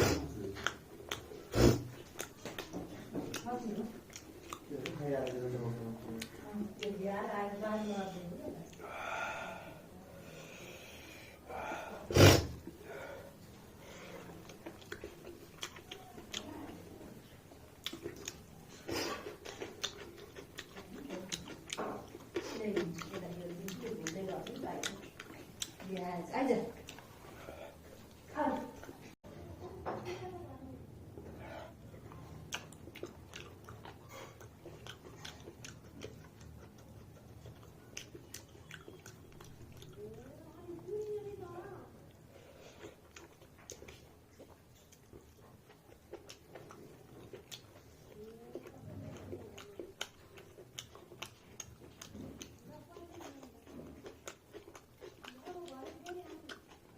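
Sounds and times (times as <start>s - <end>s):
mouth smacking and chewing: 0.0s - 7.7s, 8.6s - 9.1s, 10.3s - 29.2s, 31.1s - 56.9s
breathy exhales: 8.8s - 14.3s
person sneezing: 12.1s - 12.6s.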